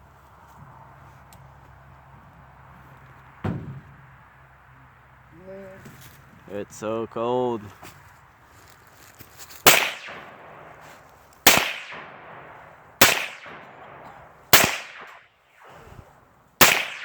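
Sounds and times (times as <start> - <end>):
gunshots with echo: 9.7 - 15.8, 16.6 - 17.0.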